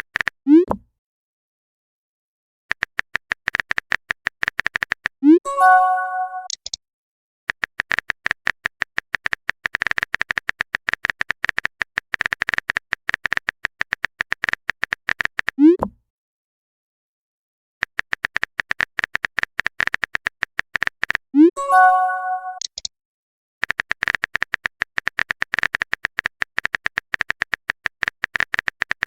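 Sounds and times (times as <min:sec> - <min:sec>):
keyboard typing clicks: 0:02.7 - 0:06.8, 0:07.5 - 0:15.9, 0:17.8 - 0:22.9, 0:23.6 - 0:29.0.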